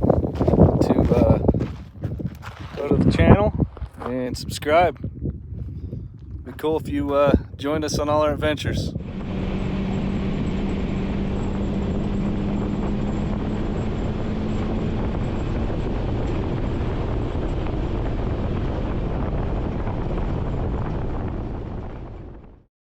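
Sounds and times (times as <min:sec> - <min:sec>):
road noise: 0:08.7 - 0:17.7
vehicle engine hum: 0:08.8 - 0:22.3.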